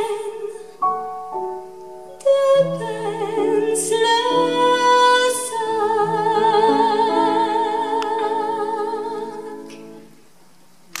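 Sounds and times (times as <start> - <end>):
woman singing with vibrato: 0.0 - 0.8, 2.2 - 10.1.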